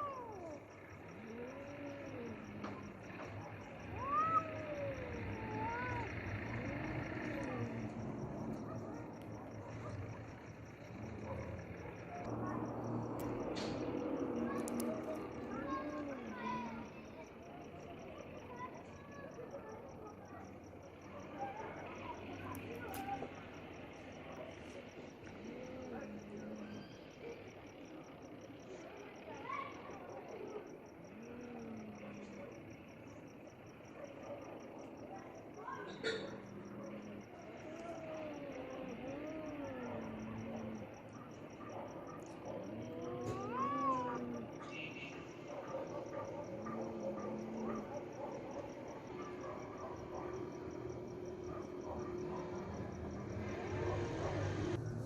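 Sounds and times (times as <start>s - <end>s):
cats yowling: 0.0s - 17.2s, 34.0s - 54.8s.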